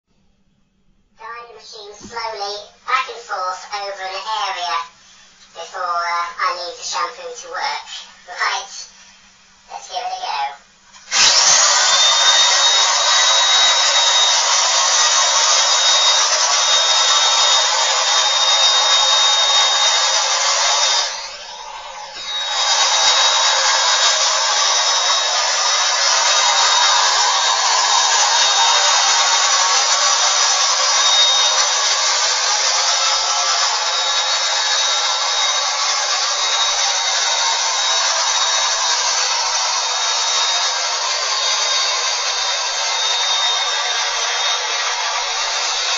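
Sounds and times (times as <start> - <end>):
carpet cleaner motor running: 10.9 - 45.9.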